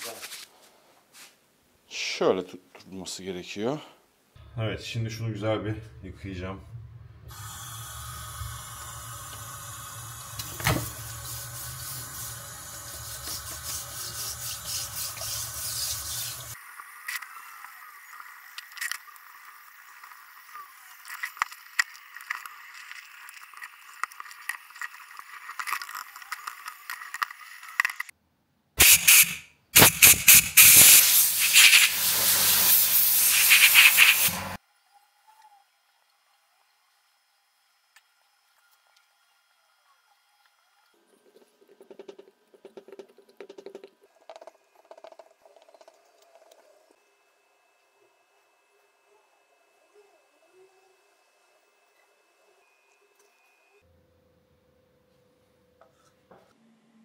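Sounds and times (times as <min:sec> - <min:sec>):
water spraying and splashing: 0:07.3 - 0:16.7.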